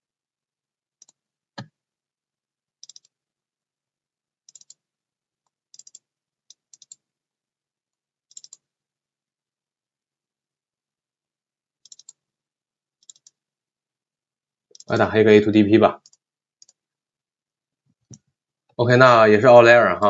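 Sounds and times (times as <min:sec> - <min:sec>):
mouse and keyboard clicking: 0:01.0 - 0:01.7, 0:02.8 - 0:03.2, 0:04.5 - 0:04.8, 0:05.7 - 0:07.0, 0:08.3 - 0:08.7, 0:11.8 - 0:12.2, 0:13.0 - 0:13.4, 0:14.7 - 0:15.0, 0:16.0 - 0:16.8.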